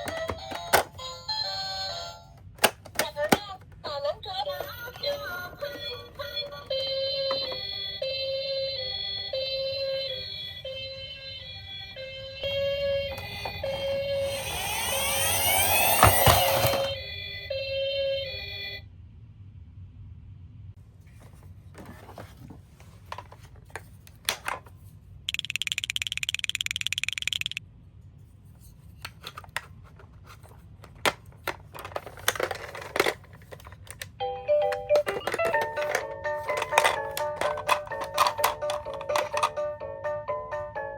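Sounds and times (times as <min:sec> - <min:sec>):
ambulance siren wailing: 0:06.9 - 0:18.8
short tune: 0:12.5 - 0:17.1
toy car scraping: 0:13.2 - 0:17.0
toy cars clicking and clattering: 0:13.7 - 0:16.9, 0:25.3 - 0:27.6, 0:29.0 - 0:39.6.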